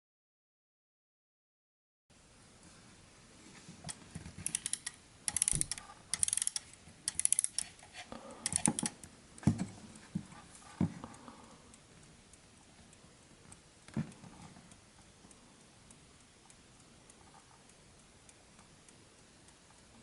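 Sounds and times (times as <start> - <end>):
alarm clock ratchet clicking: 4.4 - 9.1.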